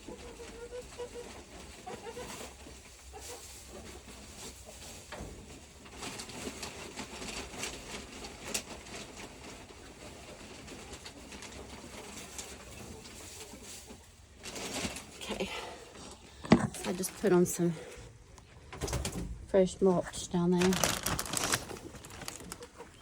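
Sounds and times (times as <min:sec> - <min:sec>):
bedding rustling and scuffing: 0:19.9 - 0:23.0.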